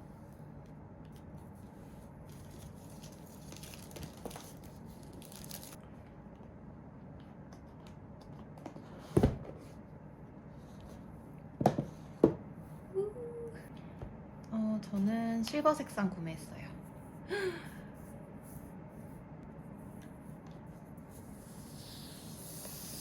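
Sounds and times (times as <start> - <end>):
packaging rustling and crinkling: 2.3 - 5.8.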